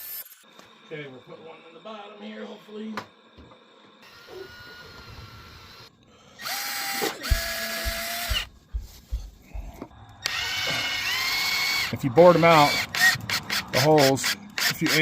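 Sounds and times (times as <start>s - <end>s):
cordless drill motor: 4.0s - 8.5s, 10.2s - 15.0s.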